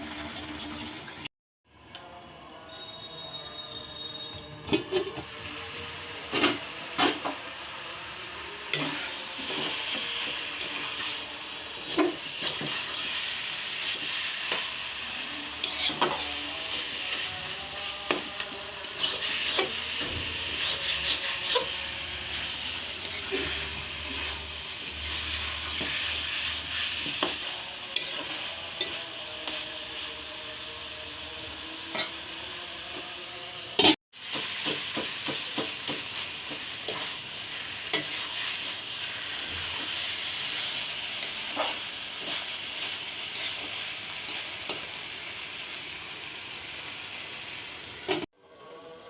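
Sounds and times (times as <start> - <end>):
food sizzling in a pan: 2.8 - 49.0
spatula scraping a pan: 8.7 - 30.1, 33.8 - 45.0.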